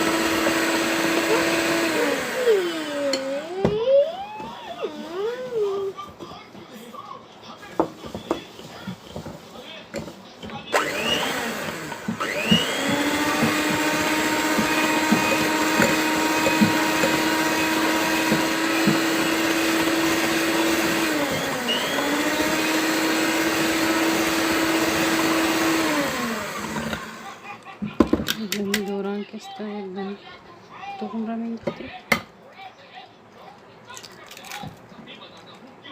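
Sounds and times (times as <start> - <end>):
electric mixer motor whine: 0.0 - 5.6, 10.7 - 27.4.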